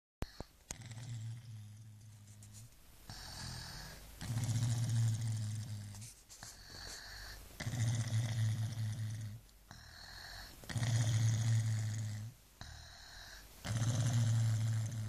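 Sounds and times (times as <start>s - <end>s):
airy hissing breath: 3.1s - 4.1s, 6.3s - 7.6s, 9.7s - 10.7s, 12.6s - 13.6s
baby snoring: 3.1s - 15.0s.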